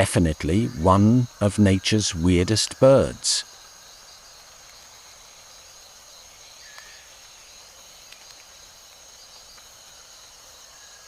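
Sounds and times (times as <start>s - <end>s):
faint ticks: 4.5s - 5.0s, 6.4s - 10.1s.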